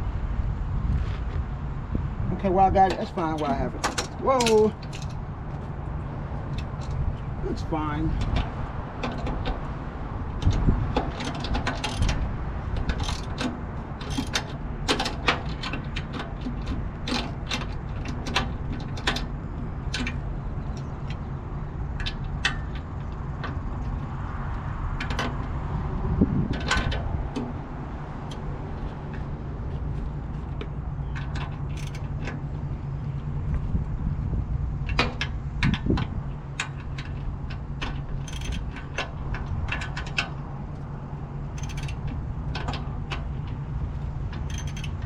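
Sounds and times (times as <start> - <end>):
steady low rumble: 0.0 - 45.0
hand ratchet clicking: 12.8 - 16.4, 31.2 - 32.1, 36.6 - 40.3, 41.5 - 43.3, 44.3 - 45.0.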